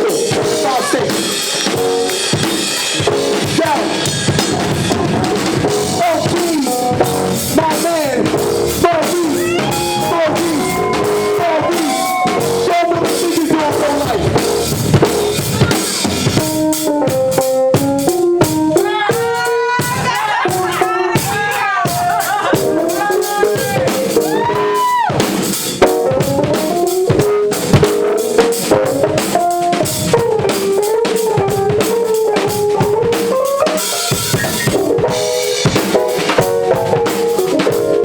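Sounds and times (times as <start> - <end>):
bending sliding melody: 0.0 - 17.1
drum kit steady beat: 0.0 - 38.0.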